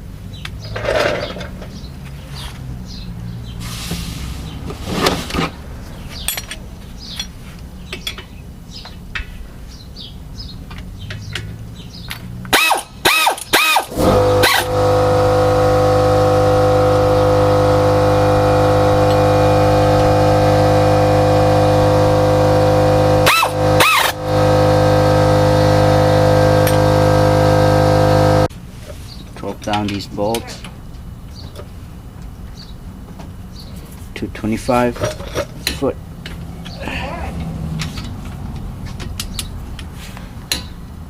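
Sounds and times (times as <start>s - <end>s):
hand tools clicking and knocking: 4.7s - 9.4s, 29.3s - 30.8s, 34.9s - 41.0s
motor revving and humming: 11.7s - 28.5s.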